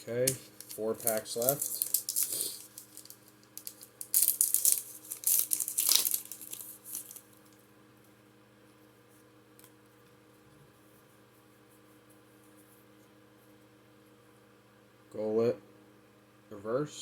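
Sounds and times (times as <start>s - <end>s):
faint steady hum: 0.0s - 17.0s
foil pack tearing and crinkling: 0.2s - 7.6s.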